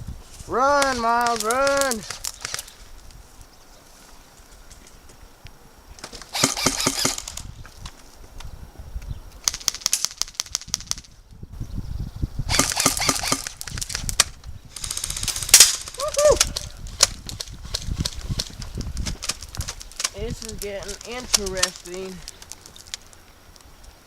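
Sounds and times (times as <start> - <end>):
airsoft guns firing rapid shots: 6.3 - 7.4, 12.5 - 14.0, 14.8 - 16.0.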